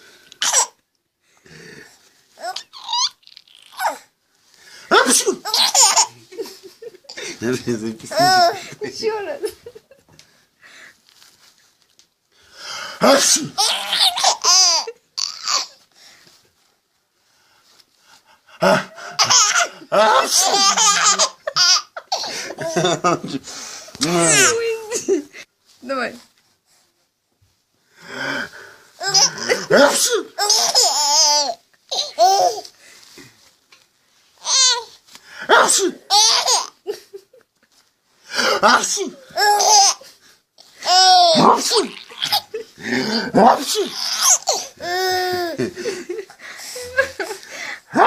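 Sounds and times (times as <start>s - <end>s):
baby laughing: 0.4s - 0.8s, 2.4s - 4.0s, 5.0s - 9.3s, 13.0s - 15.8s, 18.6s - 23.2s, 29.0s - 32.7s, 34.4s - 34.9s, 35.5s - 37.1s, 38.5s - 40.1s, 40.8s - 47.4s
man sneezing: 13.0s - 13.6s, 29.2s - 30.4s, 35.5s - 36.1s, 38.3s - 39.2s.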